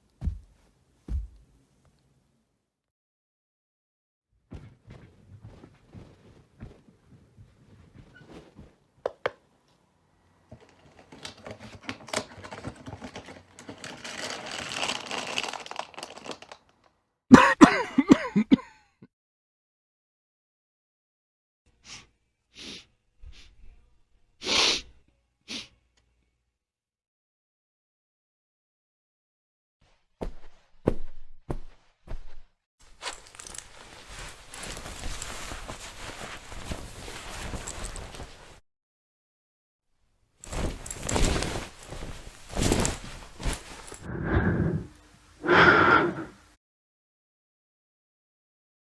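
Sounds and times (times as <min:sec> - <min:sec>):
rustling handling noises: 0:00.0 - 0:02.2, 0:04.5 - 0:16.9, 0:32.8 - 0:38.6, 0:40.4 - 0:44.1
heavy thuds: 0:00.2 - 0:01.6
person coughing: 0:17.3 - 0:18.9, 0:45.4 - 0:46.3.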